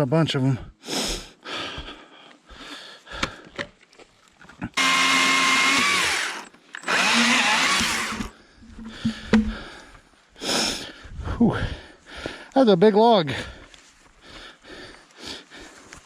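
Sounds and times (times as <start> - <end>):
battery chainsaw whine: 4.8 - 9.6.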